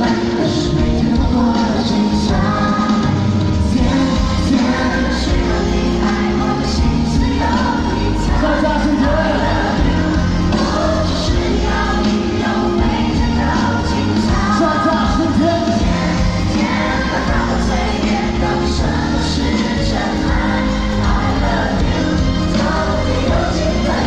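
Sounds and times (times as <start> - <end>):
live pop band with singing: 0.0 - 24.0.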